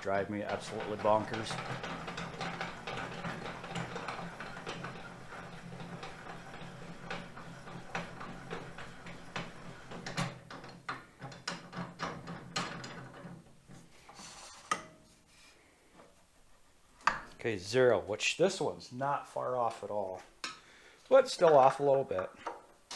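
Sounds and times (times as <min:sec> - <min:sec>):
metallic clicks and rattles: 0:00.1 - 0:13.5.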